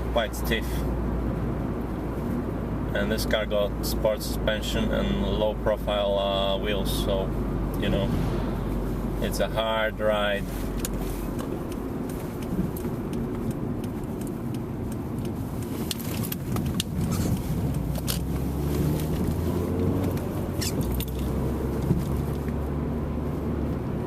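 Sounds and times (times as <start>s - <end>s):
car engine and road noise: 0.0s - 24.0s
suspension knocks and rattles: 10.8s - 22.6s.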